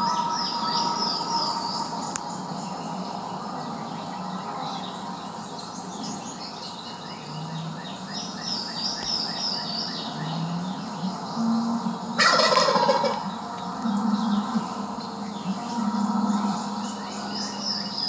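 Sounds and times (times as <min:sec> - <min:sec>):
songbirds chirping: 0:00.0 - 0:18.0
turkey gobbling: 0:12.2 - 0:13.3.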